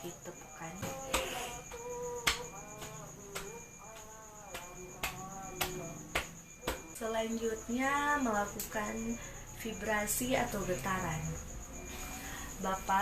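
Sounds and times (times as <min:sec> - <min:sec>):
cupped hands slapping a back: 0:00.8 - 0:07.0.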